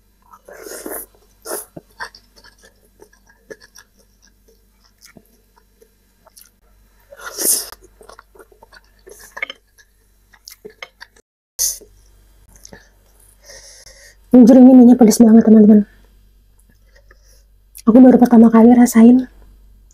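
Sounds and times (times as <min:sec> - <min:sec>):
close chewing and mouth sounds: 0:00.2 - 0:11.2.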